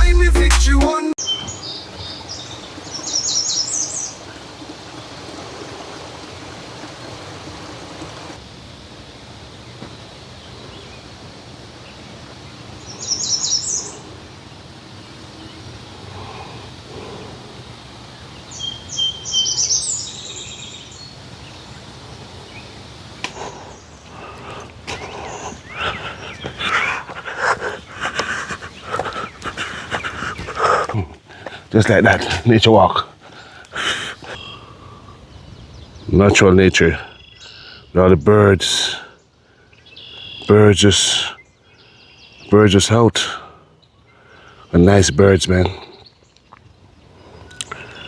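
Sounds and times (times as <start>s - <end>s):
bird chirping: 1.2s - 5.4s, 11.8s - 14.2s, 14.8s - 38.2s, 39.1s - 42.9s, 43.7s - 48.0s
steady outdoor hiss: 1.2s - 48.0s.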